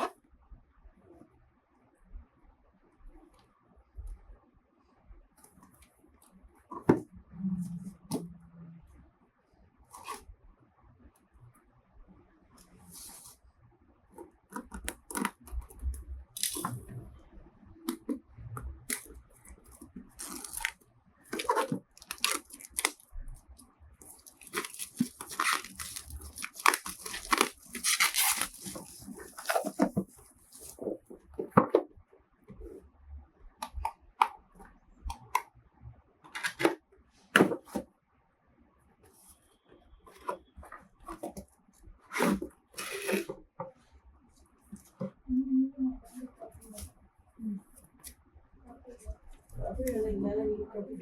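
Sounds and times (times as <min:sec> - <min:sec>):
packaging crinkling and tearing: 0:20.1 - 0:23.0, 0:24.0 - 0:30.7
packaging clicks and knocks: 0:24.2 - 0:30.1.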